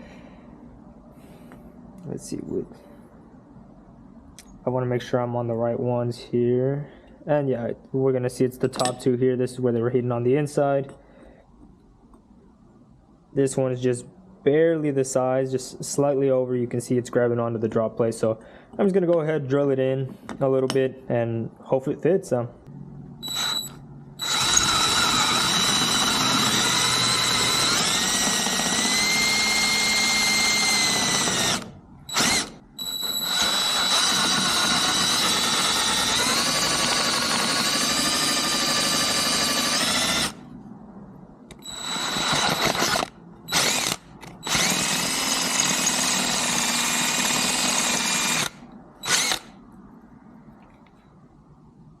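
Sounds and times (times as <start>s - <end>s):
electric drill whining: 23.2s - 40.4s, 41.5s - 49.5s.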